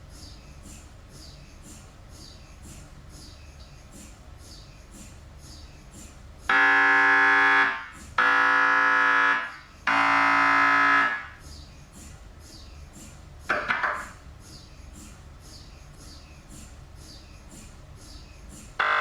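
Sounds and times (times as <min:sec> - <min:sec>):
mri scanner buzzing: 0:18.8 - 0:19.0.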